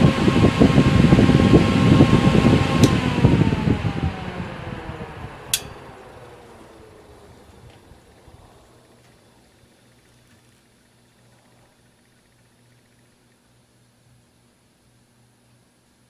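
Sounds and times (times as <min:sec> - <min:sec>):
fume extractor fans whining: 0:00.0 - 0:12.3
sharp switch click: 0:05.5 - 0:05.8.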